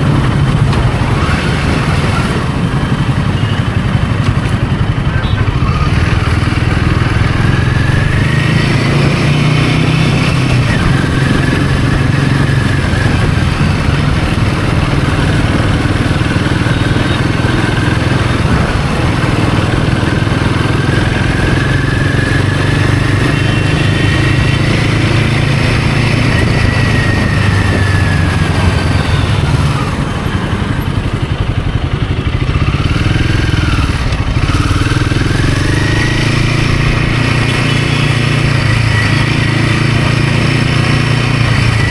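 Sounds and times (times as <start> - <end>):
motorcycle engine running: 0.0 - 41.9.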